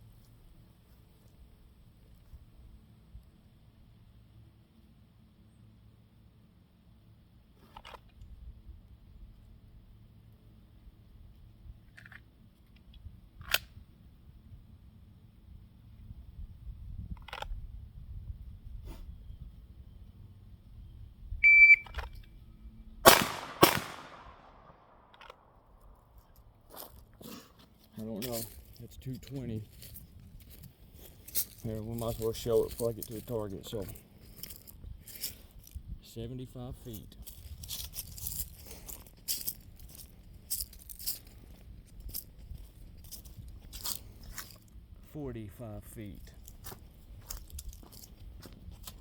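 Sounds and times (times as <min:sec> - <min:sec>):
shot timer beep: 0:21.4 - 0:22.0
pistol shots: 0:23.0 - 0:25.1
footsteps crunching: 0:26.1 - 0:35.8, 0:36.9 - 0:44.7, 0:46.2 - 0:49.0.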